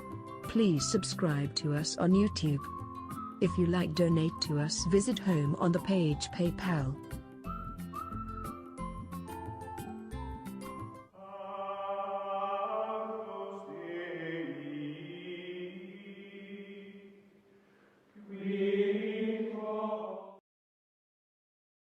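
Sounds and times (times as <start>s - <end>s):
slow choir-like chords: 11.2s - 17.3s, 18.2s - 20.4s.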